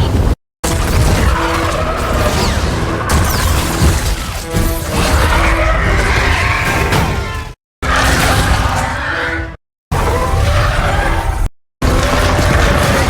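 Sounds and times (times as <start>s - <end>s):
creature calls: 5.0s - 13.0s.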